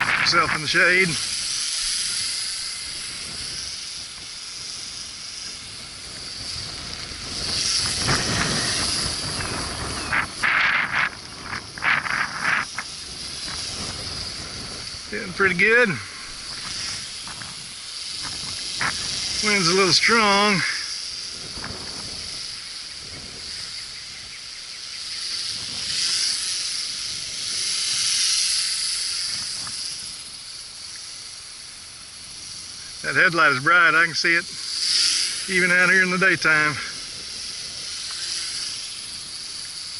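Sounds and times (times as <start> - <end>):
wind buffeting microphone: 0.0 - 30.4
toy drone propellers whining: 0.0 - 39.9.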